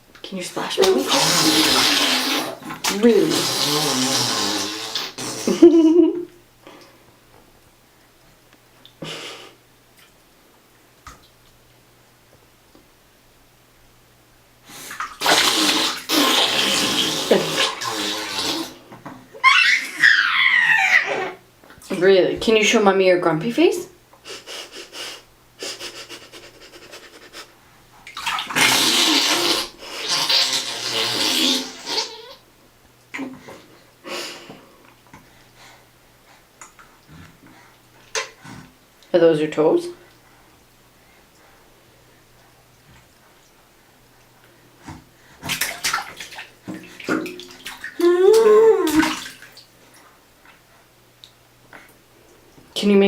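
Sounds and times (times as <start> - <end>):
bath water splashing: 0.6 - 6.0, 14.7 - 21.2, 25.8 - 32.4, 44.8 - 50.7.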